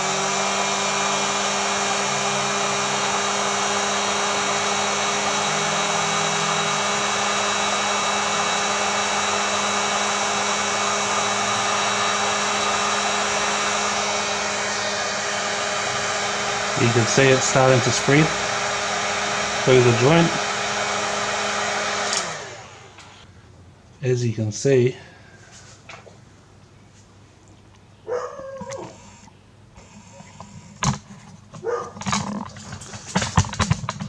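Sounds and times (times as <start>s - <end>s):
heat gun blowing air: 0.0s - 23.3s.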